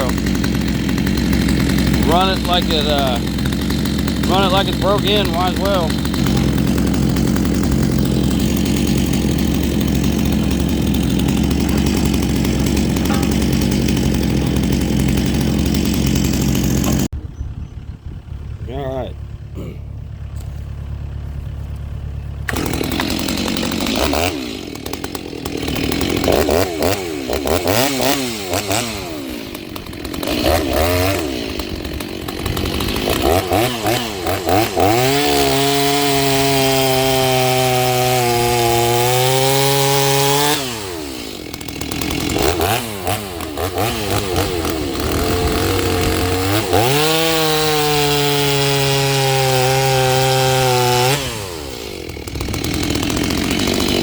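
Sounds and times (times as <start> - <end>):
chainsaw revving: 0.0 - 17.1, 18.7 - 21.2, 21.8 - 54.0.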